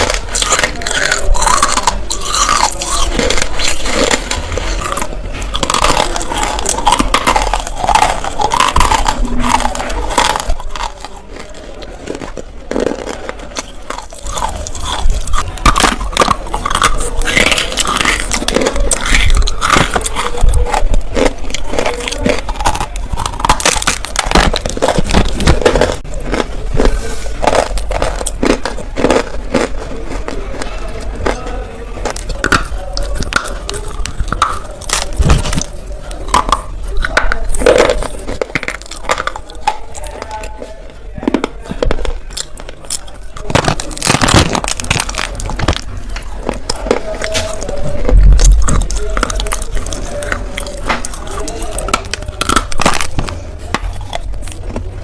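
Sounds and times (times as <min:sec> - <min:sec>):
crunching dry clay chunks: 0:00.0 - 0:55.0.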